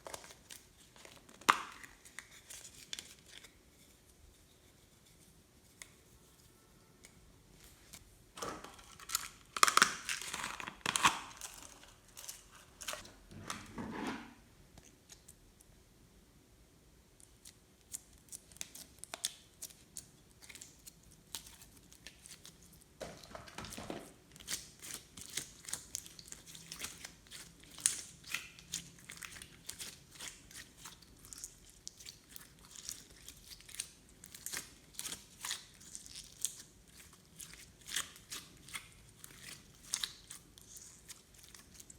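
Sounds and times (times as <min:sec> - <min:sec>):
slime crackling and popping: 0:08.9 - 0:13.0
slime squelching: 0:17.2 - 0:41.9.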